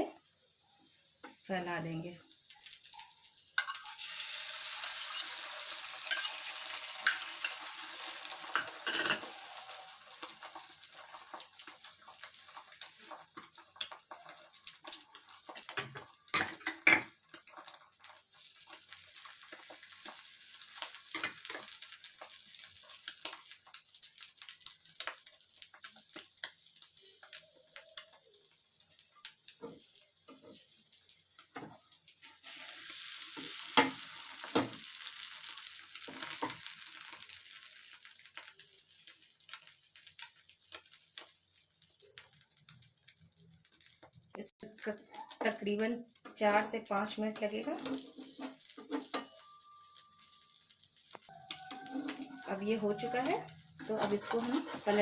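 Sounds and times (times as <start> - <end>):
food sizzling in oil: 0.0 - 55.0.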